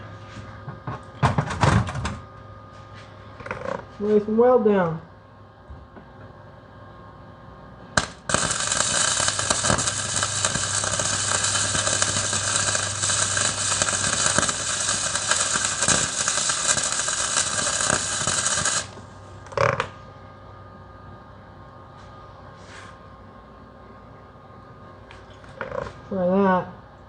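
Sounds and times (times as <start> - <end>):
arc welding crackling hiss: 8.0 - 19.7.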